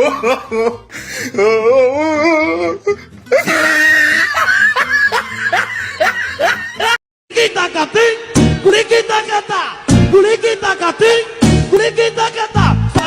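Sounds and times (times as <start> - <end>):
person giggling: 0.0 - 1.6, 2.9 - 7.0
music: 8.2 - 9.1, 9.8 - 13.0.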